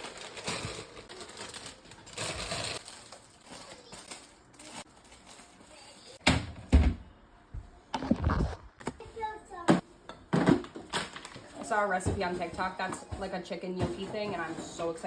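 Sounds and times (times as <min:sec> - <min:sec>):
plastic packaging rustling: 0:00.0 - 0:06.2.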